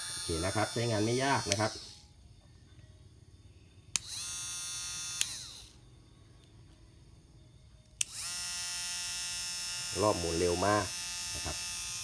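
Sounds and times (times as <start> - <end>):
rotary grinder whining: 0.0 - 2.1, 4.0 - 5.8, 8.0 - 12.0.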